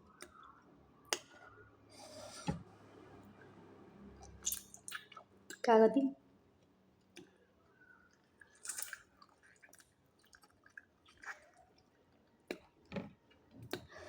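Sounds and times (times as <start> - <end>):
wet chewing: 8.0 - 12.7.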